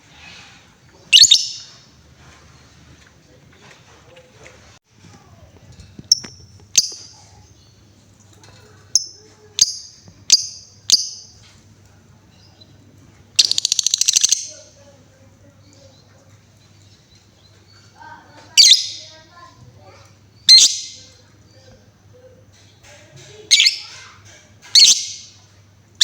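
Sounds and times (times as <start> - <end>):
lovebird chirping: 1.0 - 1.8, 6.0 - 7.8, 8.9 - 11.4, 13.4 - 14.7, 18.5 - 19.2, 20.4 - 21.6, 23.5 - 23.9, 24.8 - 25.4
bird rattling trill: 13.4 - 14.6.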